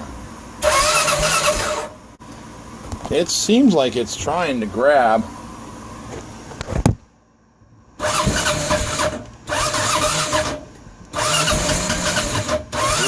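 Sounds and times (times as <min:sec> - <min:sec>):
engine electric starter cranking: 0:00.6 - 0:02.0, 0:08.0 - 0:13.0.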